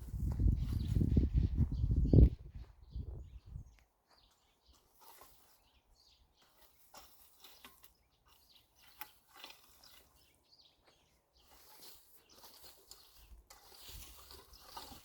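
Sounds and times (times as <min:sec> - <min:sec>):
faint clicks and scrapes: 0:03.8 - 0:15.0.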